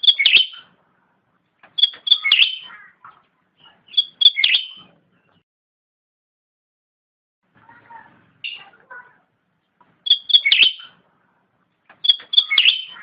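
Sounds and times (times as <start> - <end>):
bird singing: 0.0 - 0.8, 1.6 - 5.4, 8.4 - 8.8, 9.6 - 11.0, 11.9 - 13.0.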